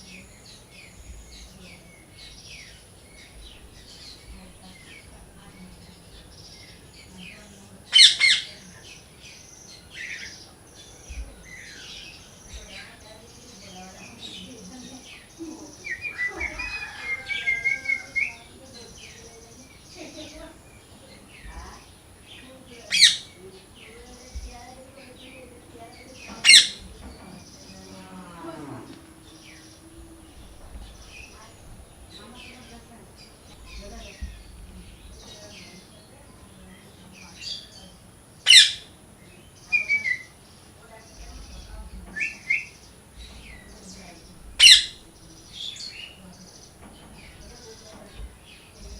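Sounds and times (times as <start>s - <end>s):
faint high chirping: 0.0s - 48.9s
parrot chirps and squawks: 22.9s - 23.3s, 26.4s - 26.8s, 38.4s - 38.9s, 44.6s - 45.0s
parrot squawk: 38.5s - 38.9s, 44.6s - 45.0s.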